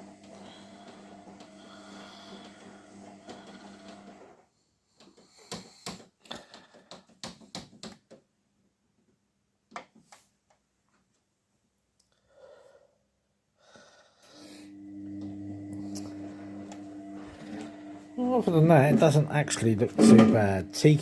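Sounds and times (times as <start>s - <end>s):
electrical hum with buzz: 0.0s - 4.3s, 14.4s - 21.0s.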